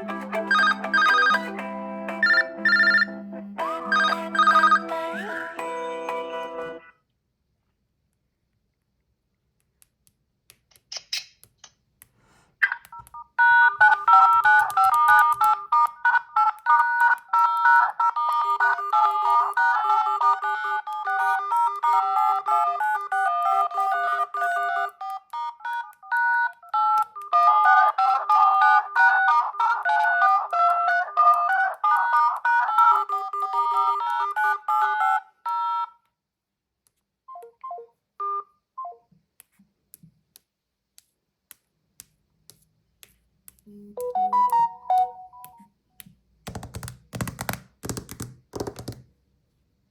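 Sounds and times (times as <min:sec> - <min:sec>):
phone ringtone melody: 0:00.0 - 0:06.9, 0:12.6 - 0:36.0, 0:43.9 - 0:45.7.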